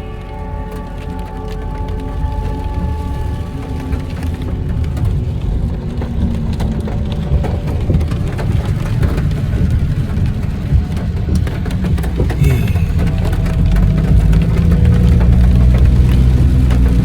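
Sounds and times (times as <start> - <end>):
hard rain: 0.0 - 17.0
raindrops ticking: 4.8 - 17.0
heavy low rumble: 12.4 - 17.0.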